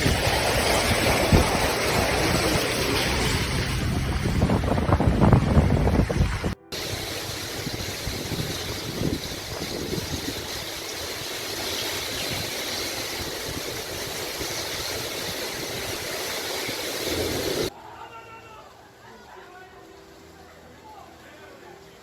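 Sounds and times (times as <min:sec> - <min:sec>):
low rumble: 0:00.0 - 0:10.0
heavy rain and running water: 0:00.0 - 0:22.0.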